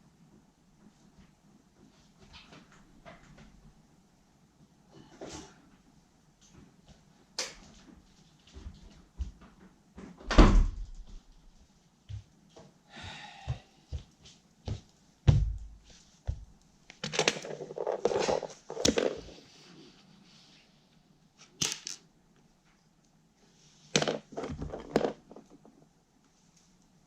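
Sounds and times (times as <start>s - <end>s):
heavy thumps: 15.3s - 16.6s
rustling and scraping: 15.8s - 22.0s, 22.6s - 26.8s
objects knocking: 24.0s - 25.8s.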